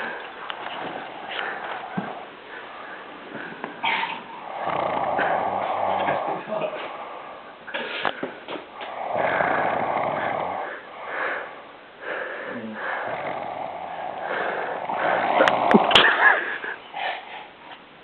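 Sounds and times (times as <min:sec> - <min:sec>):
person snoring: 0:04.4 - 0:07.3, 0:08.8 - 0:16.8.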